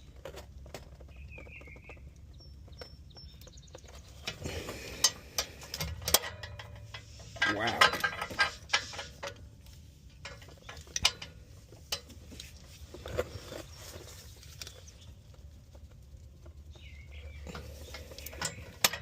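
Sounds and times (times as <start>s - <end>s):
metal tool clicks and knocks: 4.2s - 9.5s, 17.5s - 19.0s.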